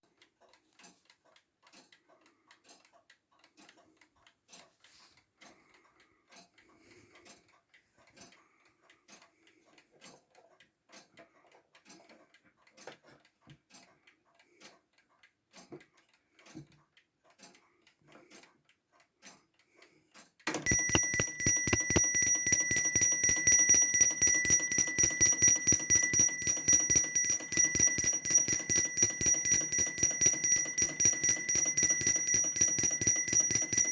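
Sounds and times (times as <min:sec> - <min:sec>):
alarm clock bell ringing: 0:20.5 - 0:33.9
clock ticking faintly: 0:20.5 - 0:33.9.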